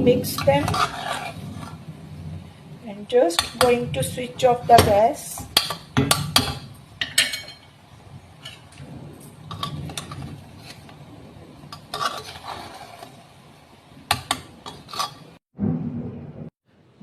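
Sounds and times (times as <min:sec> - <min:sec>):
spoon scraping cooking pot: 0:00.0 - 0:01.8, 0:03.1 - 0:07.7, 0:08.4 - 0:08.7, 0:09.5 - 0:11.0, 0:11.7 - 0:13.3, 0:14.1 - 0:15.4.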